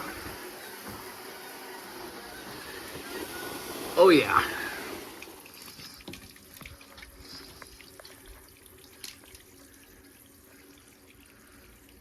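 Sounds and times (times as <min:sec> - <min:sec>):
water hissing from pipe leak: 0:00.0 - 0:12.0
small water drips: 0:04.4 - 0:12.0.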